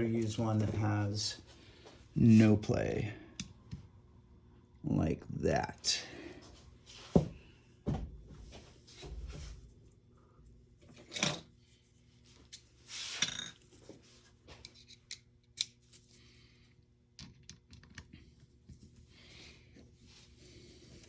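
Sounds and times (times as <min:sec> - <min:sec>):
screwdriver clicks and scrapes: 0:14.6 - 0:16.1.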